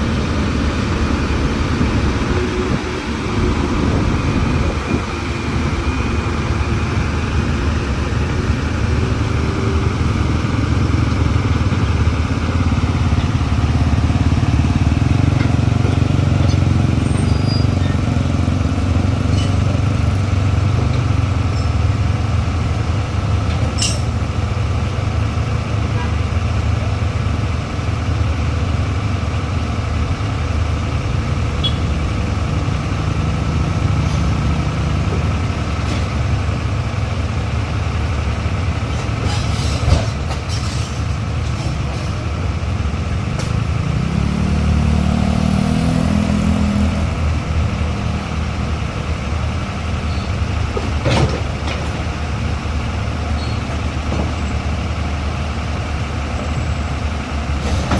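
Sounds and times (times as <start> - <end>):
diesel engines running: 0.0 - 57.9.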